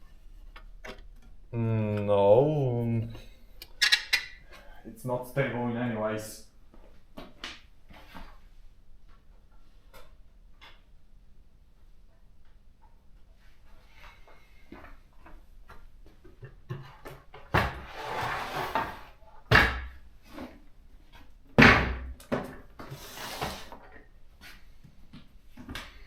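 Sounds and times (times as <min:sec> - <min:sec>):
objects sliding and scraping: 0:16.7 - 0:19.3, 0:22.8 - 0:24.9
heavy objects thumping on table: 0:21.6 - 0:22.5.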